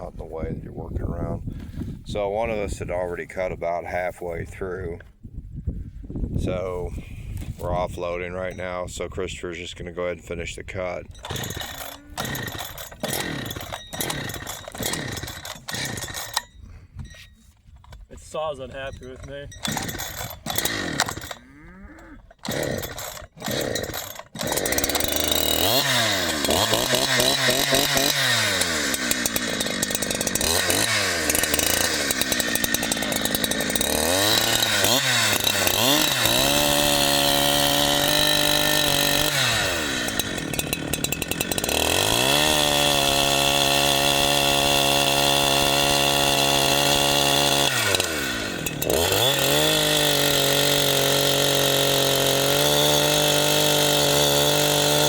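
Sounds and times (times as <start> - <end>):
chainsaw revving: 11.1 - 16.6, 19.5 - 55.0.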